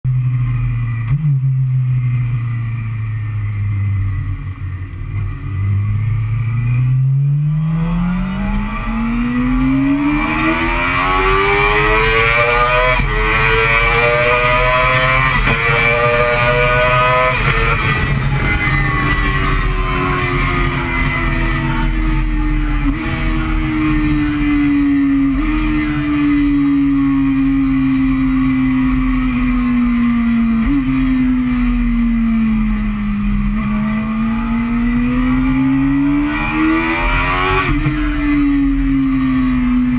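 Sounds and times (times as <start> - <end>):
motorcycle engine revving: 0.1 - 39.9
wind rushing: 8.2 - 25.2.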